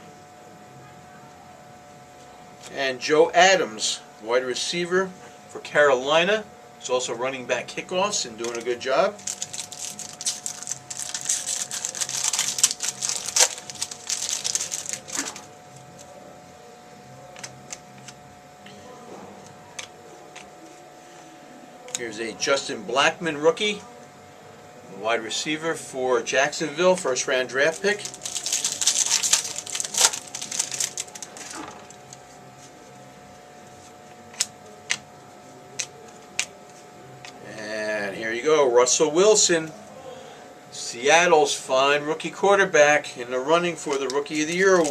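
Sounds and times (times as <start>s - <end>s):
cards crinkling and rustling: 8.4s - 16.1s, 17.4s - 18.2s, 27.0s - 32.8s, 43.8s - 44.9s.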